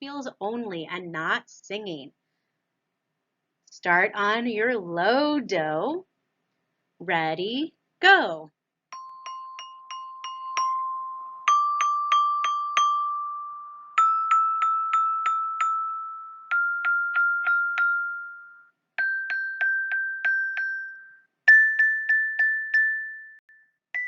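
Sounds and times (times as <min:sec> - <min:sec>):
glockenspiel notes: 0:08.9 - 0:24.0.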